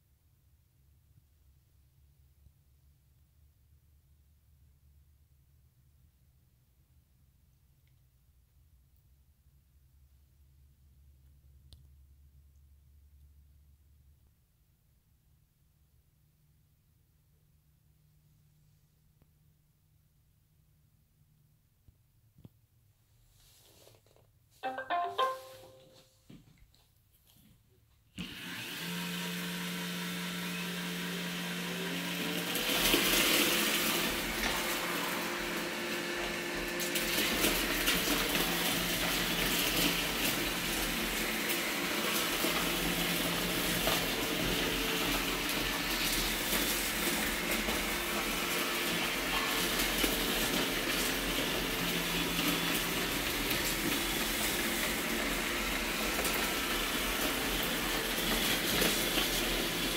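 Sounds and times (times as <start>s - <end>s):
robot vacuum whirring: 28.2s - 59.9s.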